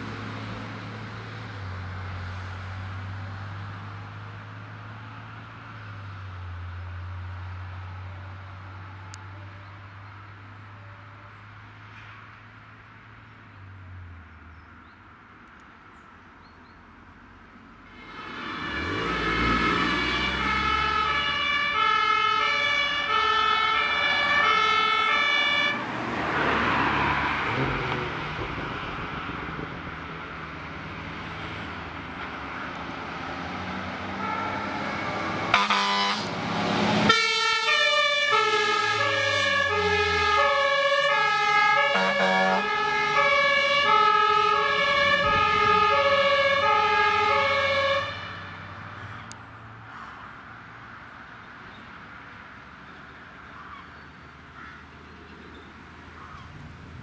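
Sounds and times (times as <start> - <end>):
truck engine: 0.0 - 14.6, 17.2 - 57.0
two-tone fire engine siren: 17.9 - 27.6, 34.1 - 48.5.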